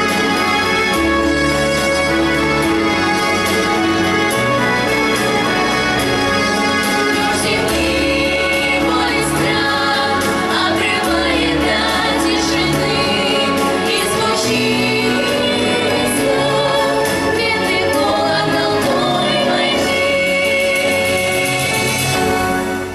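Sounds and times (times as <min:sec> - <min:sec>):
instrumental accompaniment: 0:00.0 - 0:22.9
sustained bass notes: 0:00.0 - 0:22.9
children's group singing: 0:06.6 - 0:22.1.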